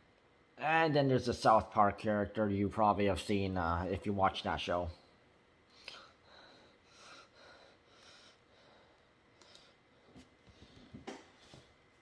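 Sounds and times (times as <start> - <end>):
soft breath-like noises: 5.0 - 11.8.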